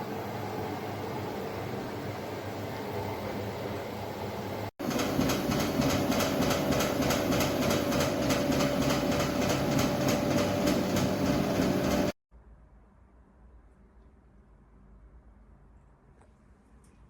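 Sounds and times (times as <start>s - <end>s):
washing machine running: 0.0s - 12.2s.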